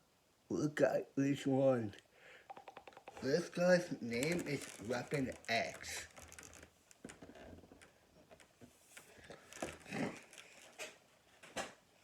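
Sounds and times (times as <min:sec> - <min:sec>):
packaging clicks and rustles: 0:03.1 - 0:11.8.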